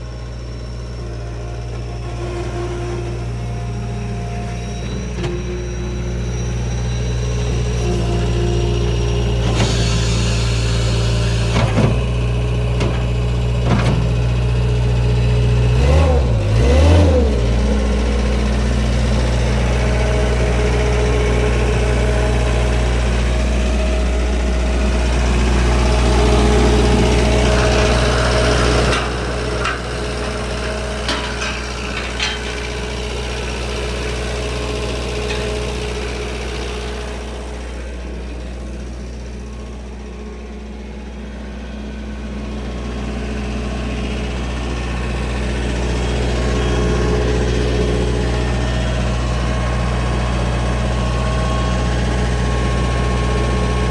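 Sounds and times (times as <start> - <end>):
diesel engine running: 0.0 - 53.9
machine knocks and clatter: 31.0 - 33.0.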